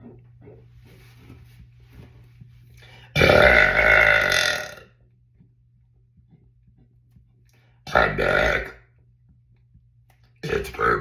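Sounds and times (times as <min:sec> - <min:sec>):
man belching: 0:03.2 - 0:04.9.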